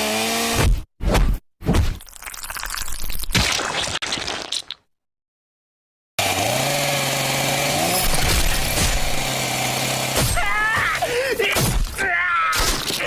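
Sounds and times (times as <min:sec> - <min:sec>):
crashing and breaking noise: 0:08.2 - 0:09.2.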